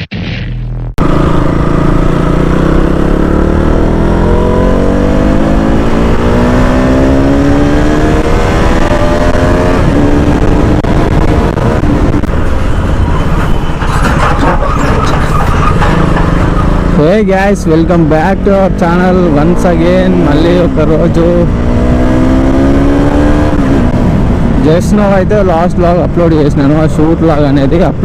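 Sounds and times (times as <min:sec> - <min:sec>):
wind and road noise: 0:00.0 - 0:28.0.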